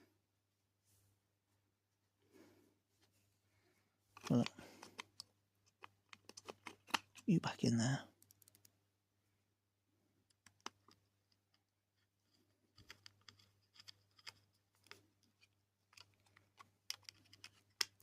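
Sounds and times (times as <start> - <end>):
plastic parts clicking: 4.2 - 7.3, 10.3 - 11.6, 12.7 - 18.0.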